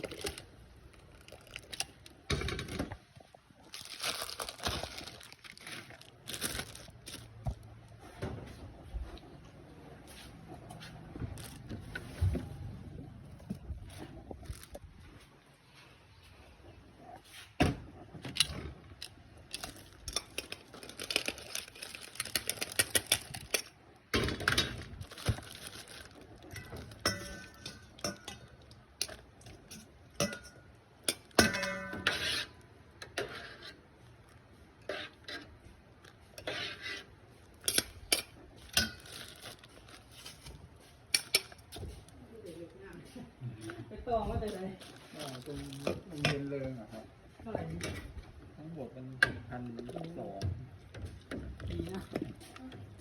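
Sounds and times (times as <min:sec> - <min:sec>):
dishes and utensils clinking: 0:26.4 - 0:32.4.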